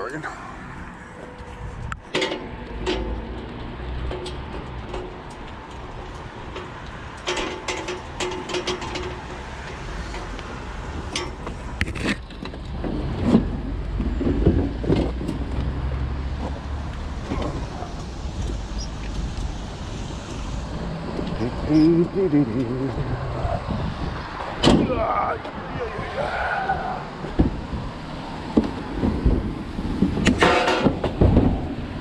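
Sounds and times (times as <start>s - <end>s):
steady low rumble: 16.6s - 26.3s
scrap metal clanking: 30.2s - 31.3s.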